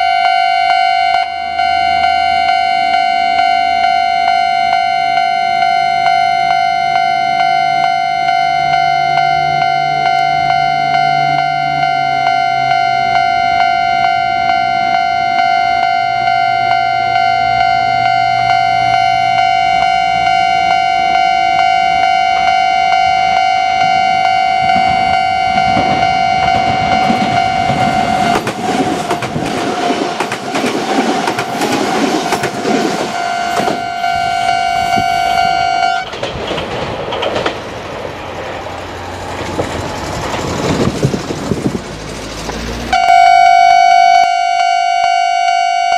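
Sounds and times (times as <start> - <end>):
level crossing bell ringing: 0.0 - 28.4, 33.1 - 36.1, 42.9 - 45.9
train wheels clattering over rail joints: 26.6 - 33.8, 36.0 - 42.9.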